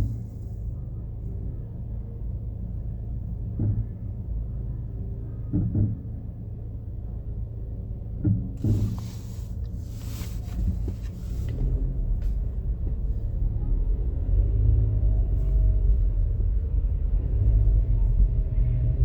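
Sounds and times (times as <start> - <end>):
low rumble of traffic: 0.0 - 19.0
vehicle approaching: 11.3 - 19.0.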